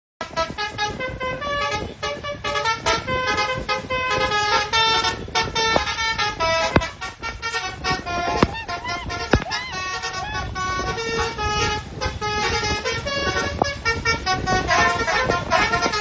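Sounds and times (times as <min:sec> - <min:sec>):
musical bus horn tune: 0:00.2 - 0:16.0.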